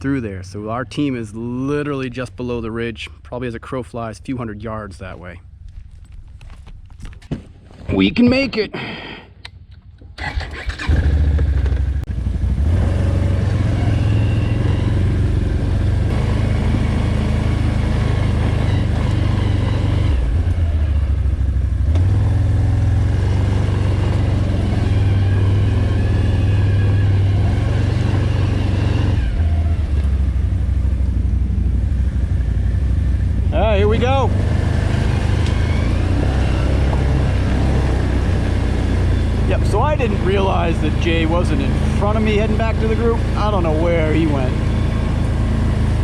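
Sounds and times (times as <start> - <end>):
quad bike engine revving: 10.2 - 46.0.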